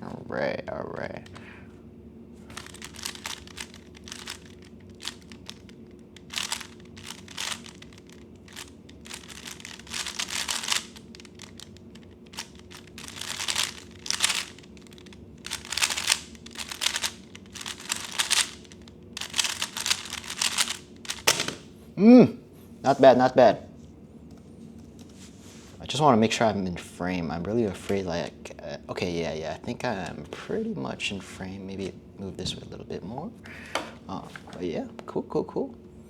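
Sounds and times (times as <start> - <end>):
faint steady hum: 0.0 - 36.0
plastic puzzle cube clicking: 2.6 - 21.6.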